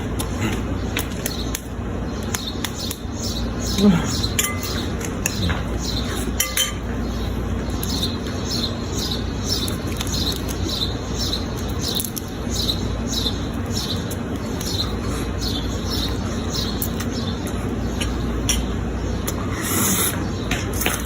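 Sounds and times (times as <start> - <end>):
bird chirping: 0.0 - 21.0
steady low background noise: 0.0 - 21.0.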